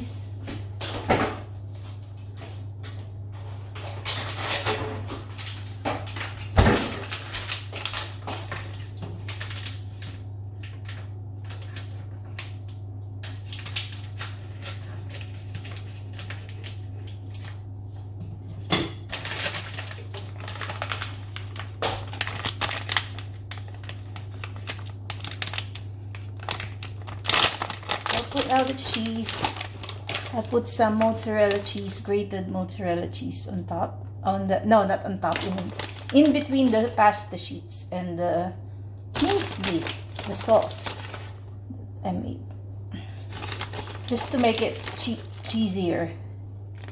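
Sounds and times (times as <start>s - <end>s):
steady low hum: 0.0s - 46.9s
rustling and crinkling: 19.1s - 31.9s, 35.3s - 37.0s, 39.2s - 41.5s, 43.3s - 45.8s.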